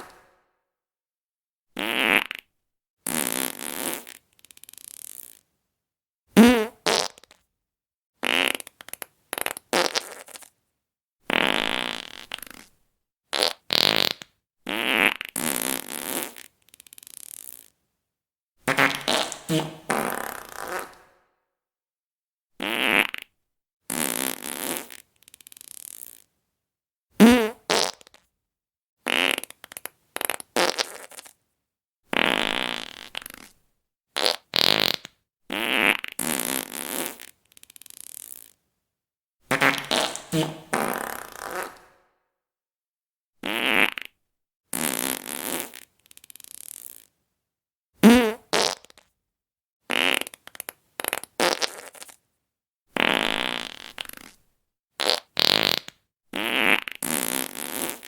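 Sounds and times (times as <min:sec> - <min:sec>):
fart sound effects: 0:00.0 - 0:00.4, 0:01.8 - 0:02.4, 0:06.4 - 0:07.3, 0:08.2 - 0:10.5, 0:18.7 - 0:21.2, 0:22.6 - 0:23.3, 0:27.2 - 0:28.1, 0:39.5 - 0:42.1, 0:43.4 - 0:45.9, 0:48.0 - 0:49.0, 0:49.9 - 0:50.4, 0:51.0 - 0:52.2, 0:53.0 - 0:54.4, 0:55.0 - 0:58.0.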